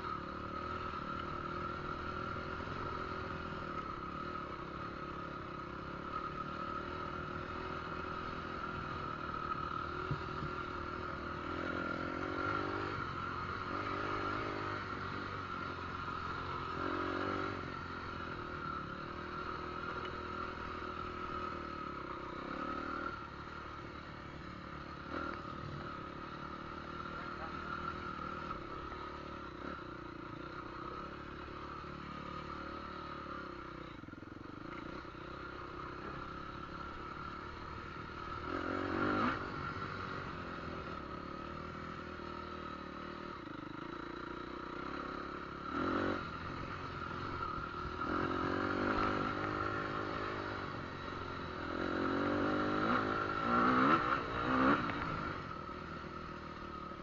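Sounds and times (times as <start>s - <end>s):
engine revving: 6.0s - 23.3s, 36.0s - 41.4s, 44.8s - 56.1s.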